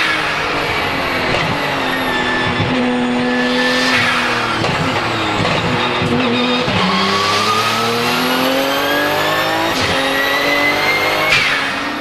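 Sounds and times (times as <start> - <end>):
race car engine running hard: 0.0 - 12.0.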